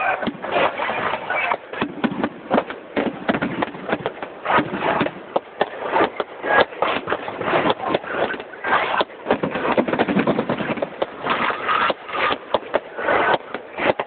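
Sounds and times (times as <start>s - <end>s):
continuous rumbling: 0.0s - 14.0s
fireworks bangs and crackles: 0.0s - 14.0s.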